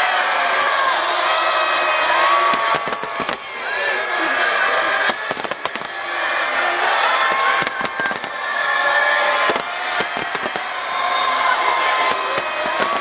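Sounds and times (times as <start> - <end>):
fireworks bangs and crackles: 2.2 - 3.6, 4.8 - 13.0.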